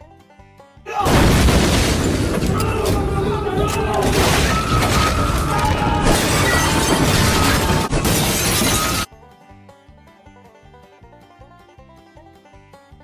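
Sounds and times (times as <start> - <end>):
plucked banjo-like music: 0.0 - 0.9, 9.0 - 13.0
music: 0.0 - 1.2, 4.8 - 13.0
crashing and shattering: 1.0 - 9.1.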